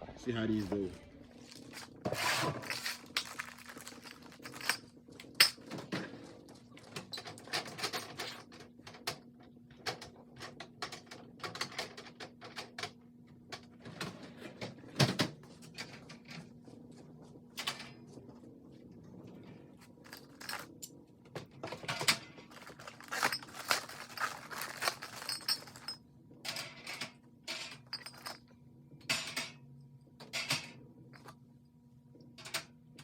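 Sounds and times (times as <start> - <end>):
faint steady hum: 0.0 - 33.0
objects being handled: 0.6 - 6.1, 19.7 - 26.0.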